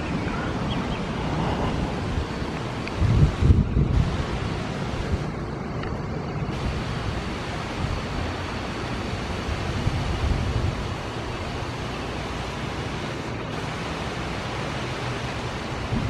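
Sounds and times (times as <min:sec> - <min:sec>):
strong wind rushing: 0:00.0 - 0:05.5, 0:06.5 - 0:11.8
wind gusts rumbling on microphone: 0:00.0 - 0:16.0.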